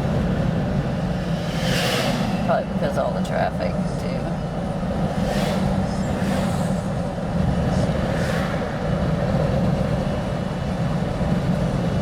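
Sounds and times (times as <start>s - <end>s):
car road and engine noise: 0.0s - 12.0s
short whooshes: 1.3s - 2.5s.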